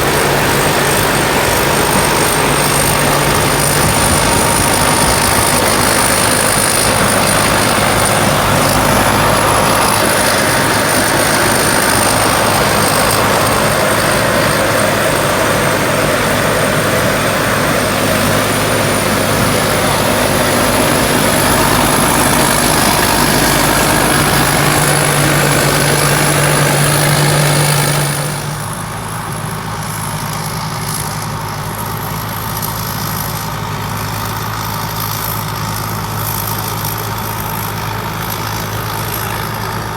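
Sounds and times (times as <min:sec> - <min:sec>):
thin high whine: 0:00.0 - 0:29.4
diesel engine running: 0:00.0 - 0:39.9.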